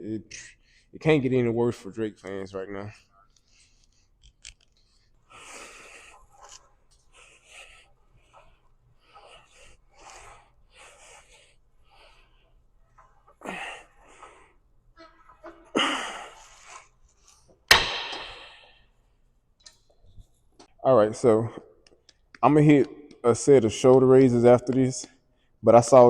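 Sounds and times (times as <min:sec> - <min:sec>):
person panting hard: 0:05.3 - 0:12.6
sharp impact with ringing: 0:17.7 - 0:18.8.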